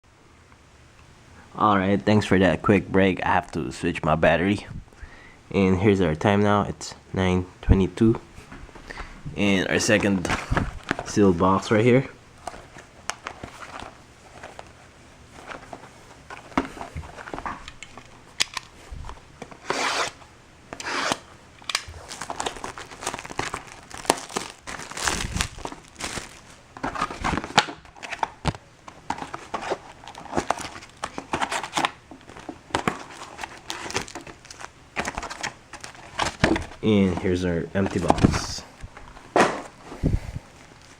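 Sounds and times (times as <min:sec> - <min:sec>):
plastic wrap tearing and crinkling: 0:20.8 - 0:36.9.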